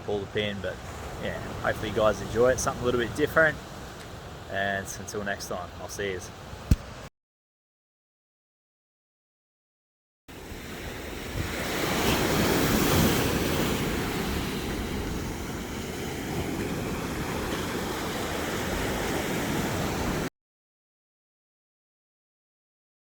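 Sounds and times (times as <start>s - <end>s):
ocean surf breaking: 10.3s - 20.3s.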